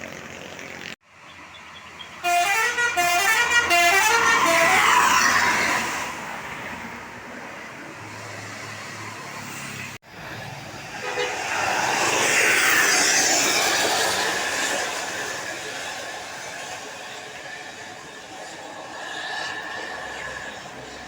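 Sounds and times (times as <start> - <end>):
buses driving past: 0.0 - 21.0
musical bus horn tune: 2.2 - 5.5, 11.0 - 11.5.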